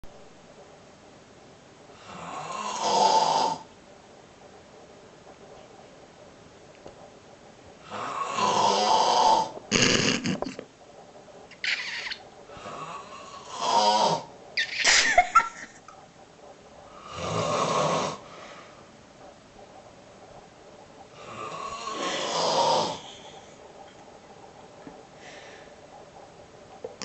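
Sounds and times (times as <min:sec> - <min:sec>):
quiet breathing: 0:01.9 - 0:03.7, 0:07.7 - 0:09.6, 0:12.0 - 0:14.4, 0:16.7 - 0:27.0
man snoring: 0:02.0 - 0:03.7, 0:07.8 - 0:10.4, 0:12.6 - 0:14.3, 0:17.0 - 0:18.2, 0:21.2 - 0:23.2.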